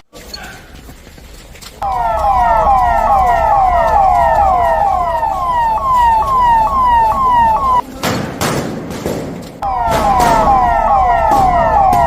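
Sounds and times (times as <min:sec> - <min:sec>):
emergency vehicle sirens: 0:01.8 - 0:07.8, 0:09.6 - 0:12.0.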